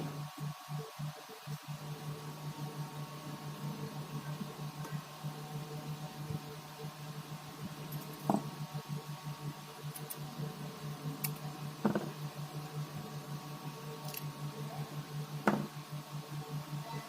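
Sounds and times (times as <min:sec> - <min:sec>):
pulsing electrical hum: 0:00.0 - 0:17.0.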